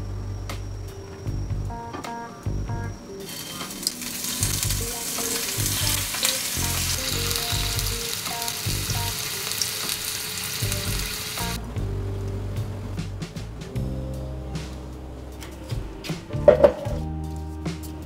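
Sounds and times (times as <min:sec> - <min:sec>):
background music: 0:00.0 - 0:18.0
food sizzling in hot oil: 0:03.2 - 0:11.6.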